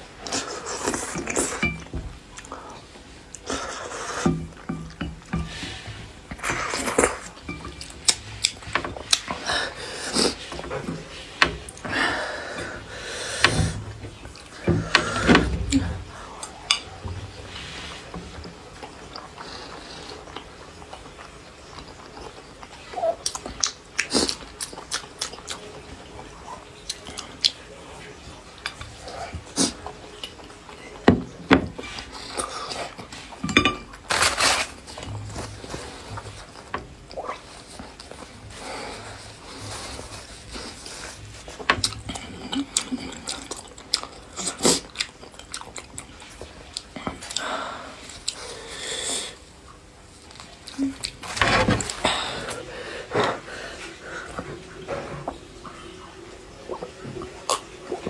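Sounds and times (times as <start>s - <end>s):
utensils clinking against bowl: 0.9s - 1.9s, 4.2s - 9.4s, 33.3s - 35.0s
chewing: 18.4s - 31.0s, 34.0s - 48.5s.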